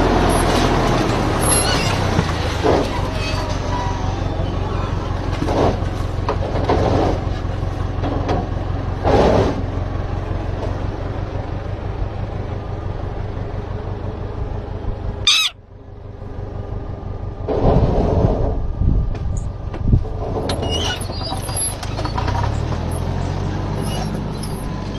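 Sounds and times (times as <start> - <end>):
tractor engine running: 0.0 - 24.9
shrill bird call: 15.2 - 15.6
bird harsh alarm calls: 15.3 - 15.6.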